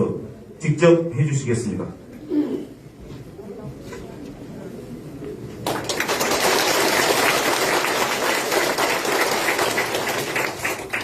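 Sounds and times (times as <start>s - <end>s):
audience applauding: 5.6s - 11.0s.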